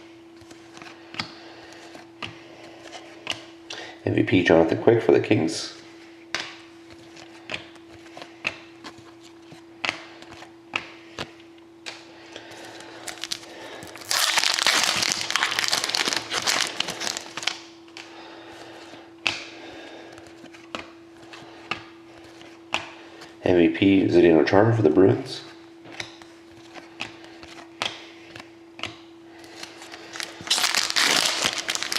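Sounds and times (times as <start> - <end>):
foil wrapper tearing and crinkling: 12.7 - 17.7, 30.1 - 31.9
cards clicking and tapping: 27.0 - 29.0.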